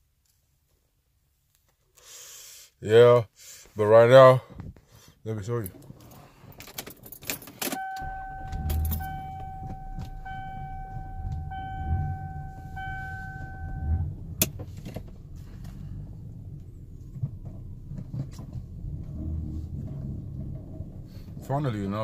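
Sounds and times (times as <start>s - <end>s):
keys jangling in ignition: 5.7s - 11.4s
car engine starting and idling: 5.8s - 22.0s
high warning tone: 7.7s - 14.2s.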